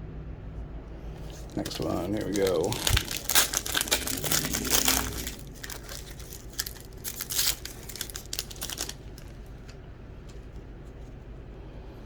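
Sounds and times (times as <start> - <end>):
wrapper crinkling and tearing: 1.2 - 9.8.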